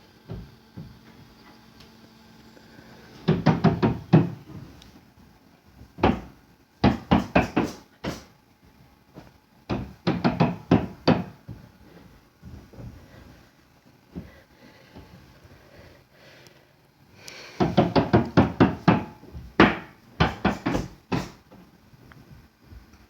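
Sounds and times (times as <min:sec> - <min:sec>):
loud banging knocks: 0:03.3 - 0:04.5, 0:06.0 - 0:08.2, 0:09.7 - 0:11.4, 0:17.6 - 0:21.4.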